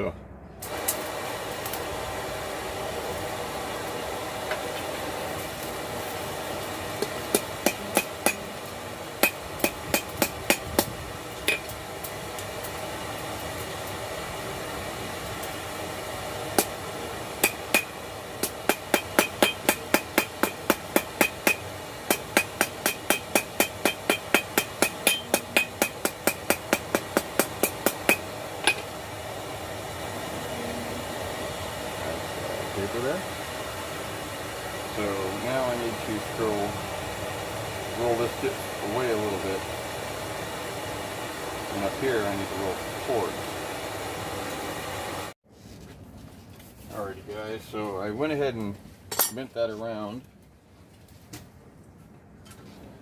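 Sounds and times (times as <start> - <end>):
hammer ringing on an anvil: 18.7 - 28.8.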